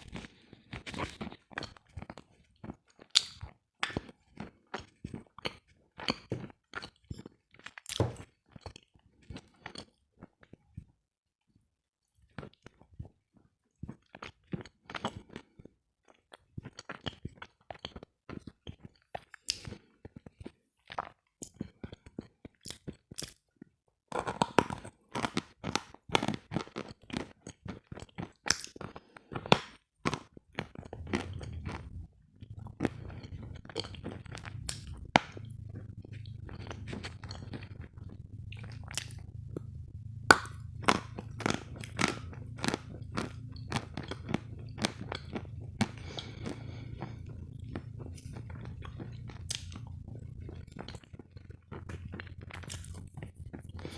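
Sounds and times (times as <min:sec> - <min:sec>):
crunching hard sugar: 0:24.1 - 0:26.5, 0:29.6 - 0:53.9
low steady hum: 0:30.8 - 0:53.9.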